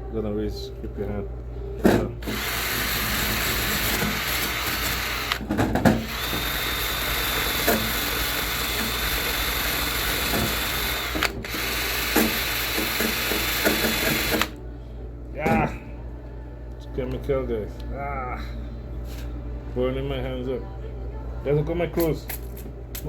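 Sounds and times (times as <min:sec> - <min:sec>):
electric drill running: 0:02.2 - 0:14.6.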